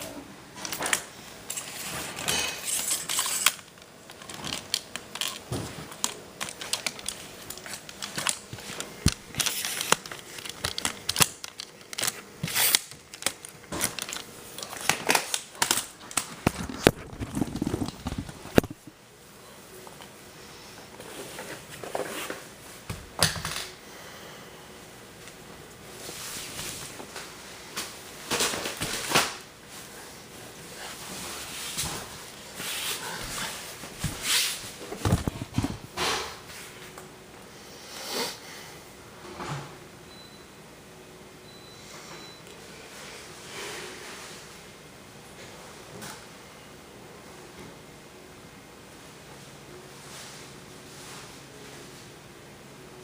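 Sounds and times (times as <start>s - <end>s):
rustling and crinkling: 0.6s - 18.9s, 25.9s - 36.9s.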